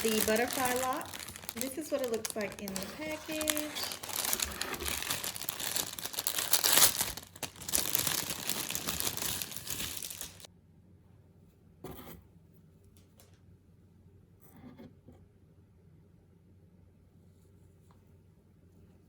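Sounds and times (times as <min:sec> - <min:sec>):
plastic packaging crinkling: 0:00.0 - 0:10.5.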